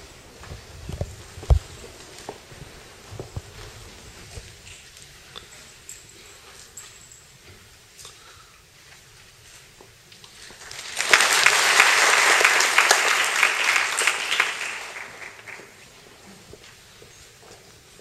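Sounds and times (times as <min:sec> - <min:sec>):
audience applause: 0:10.5 - 0:16.0.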